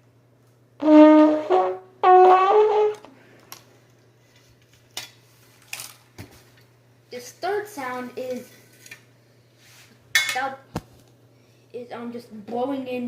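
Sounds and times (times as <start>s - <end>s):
lips buzzing into trombone: 0.8s - 3.1s.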